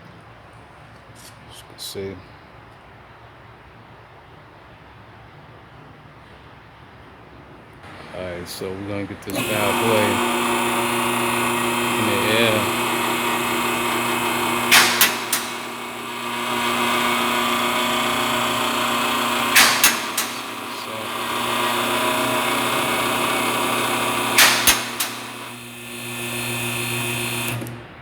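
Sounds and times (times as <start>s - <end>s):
lift pump motor humming: 9.2s - 28.0s.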